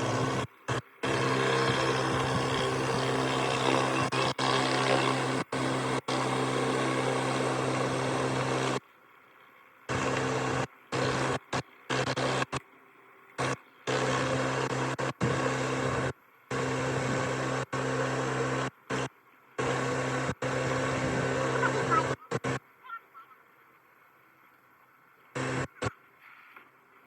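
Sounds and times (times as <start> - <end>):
pressure washer motor hum: 0.0 - 8.8, 9.9 - 12.6, 13.4 - 22.6, 25.4 - 25.9
water jet hissing: 0.0 - 8.8.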